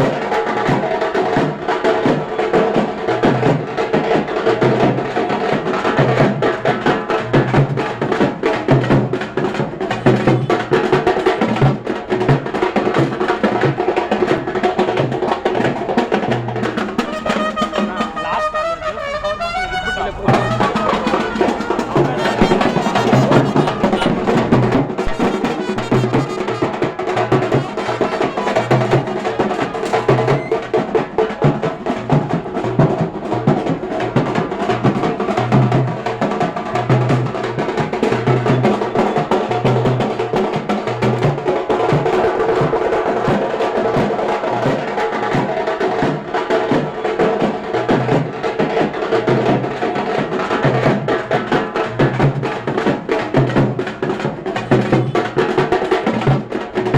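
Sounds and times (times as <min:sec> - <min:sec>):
deep drum beat: 0:00.0 - 0:46.9, 0:47.9 - 0:56.9
percussion ensemble drumming: 0:00.0 - 0:56.9.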